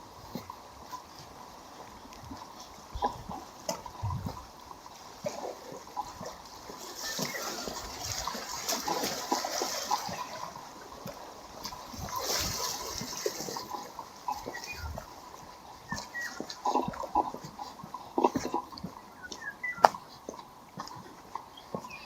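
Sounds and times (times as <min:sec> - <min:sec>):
sea waves splashing on shore: 0:00.0 - 0:20.0.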